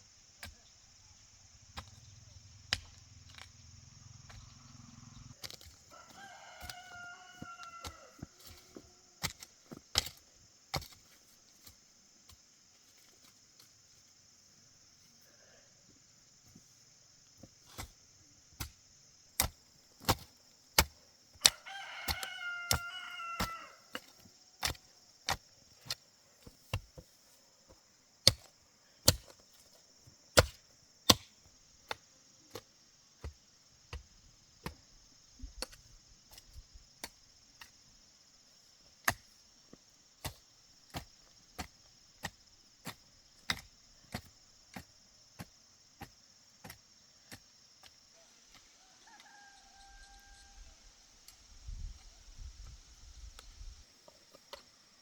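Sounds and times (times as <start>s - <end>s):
rooster crowing: 5.9s - 8.5s, 21.4s - 24.0s, 48.8s - 51.0s
hand tool striking: 19.4s - 26.0s.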